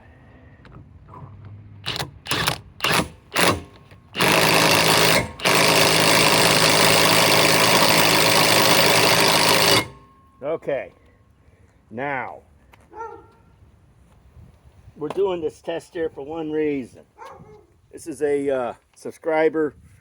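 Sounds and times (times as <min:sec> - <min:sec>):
impact wrench hammering: 0:01.9 - 0:10.3.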